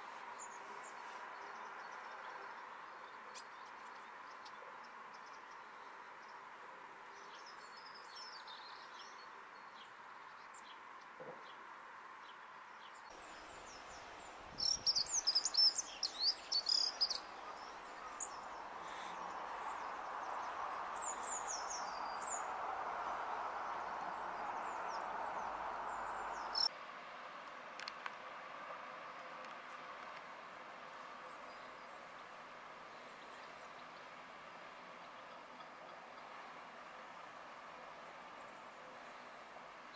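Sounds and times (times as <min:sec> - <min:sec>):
songbird chirping: 0:00.0 - 0:26.8
steady background noise: 0:09.3 - 0:39.9.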